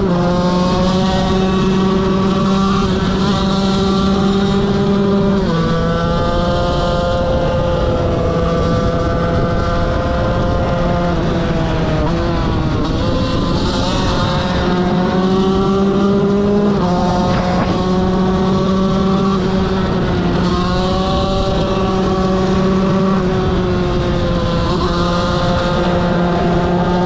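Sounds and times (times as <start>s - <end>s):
motorcycle engine revving hard: 0.0s - 27.0s.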